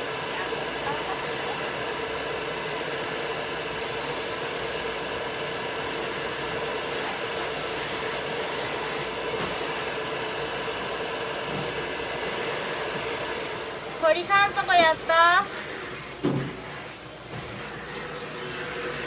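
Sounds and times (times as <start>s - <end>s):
dryer blowing air: 0.0s - 19.0s
dryer motor hum: 0.0s - 19.0s.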